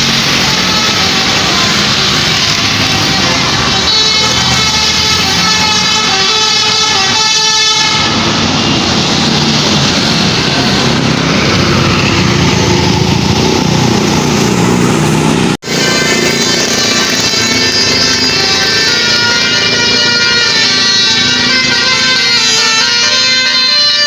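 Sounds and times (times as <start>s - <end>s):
musical bus horn playing a tune: 0.0s - 8.5s, 15.6s - 24.0s.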